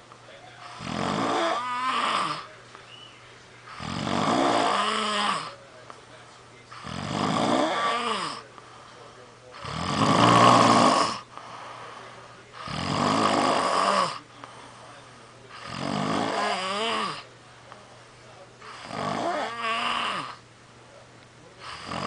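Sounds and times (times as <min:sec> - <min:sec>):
person snoring: 0:00.7 - 0:02.5, 0:03.7 - 0:05.6, 0:06.8 - 0:08.5, 0:09.6 - 0:11.9, 0:12.6 - 0:14.2, 0:15.6 - 0:17.3, 0:18.7 - 0:20.4, 0:21.6 - 0:22.0.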